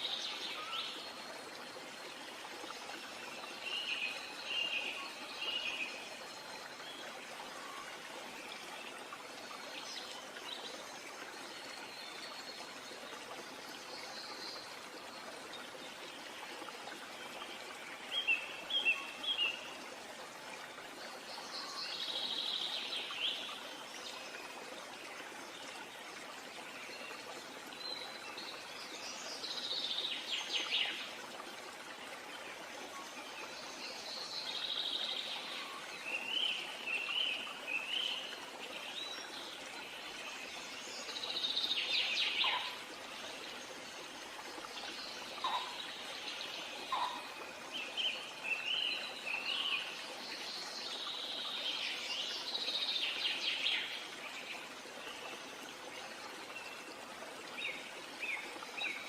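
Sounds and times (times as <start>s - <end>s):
birds singing: 41.0s - 42.8s, 45.0s - 49.9s.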